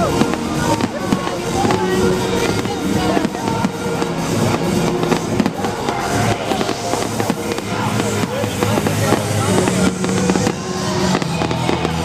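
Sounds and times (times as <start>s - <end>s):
fireworks bangs and crackles: 0.0s - 12.0s
loud music from sound system: 0.0s - 12.0s.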